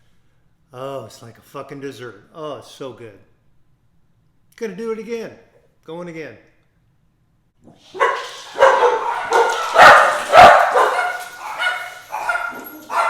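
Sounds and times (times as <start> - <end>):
dogs barking: 7.8 - 13.0.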